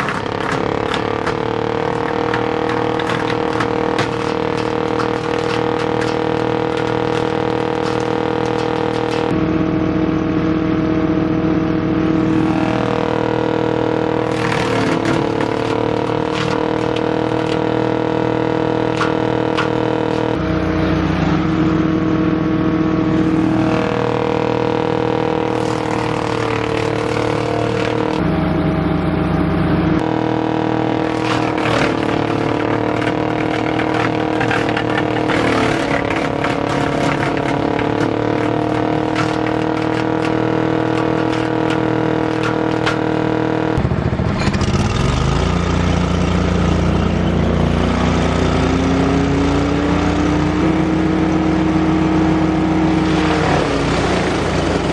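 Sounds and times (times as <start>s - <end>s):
rattling and knocking: 0.0s - 9.4s, 14.1s - 20.4s, 23.2s - 28.3s, 31.0s - 44.9s
wood chipper engine running: 0.0s - 54.9s.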